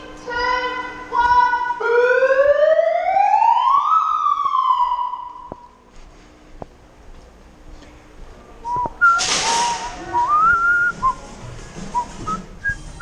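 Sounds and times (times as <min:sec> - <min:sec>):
siren wailing: 0:01.8 - 0:05.7.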